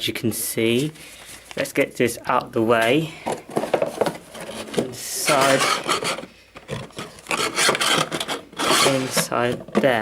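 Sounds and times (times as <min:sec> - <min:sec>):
paper and cardboard rustling: 0:03.2 - 0:10.0.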